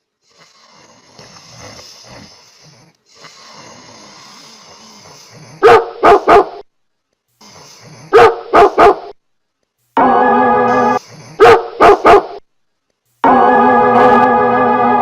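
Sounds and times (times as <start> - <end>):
dog barking: 5.6 - 6.6, 8.1 - 9.2, 11.4 - 12.4.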